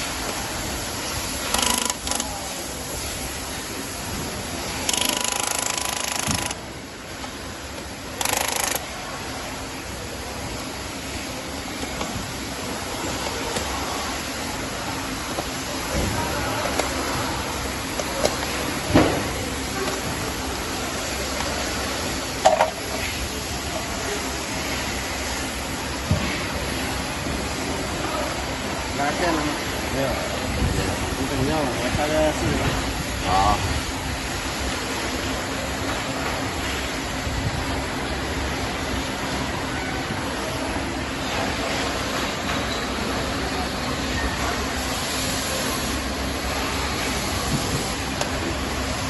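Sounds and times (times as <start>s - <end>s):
steady background hum: 0.0s - 49.0s
workshop background noise: 0.0s - 49.0s
power tool hammering rattle: 1.4s - 2.3s, 4.8s - 6.6s.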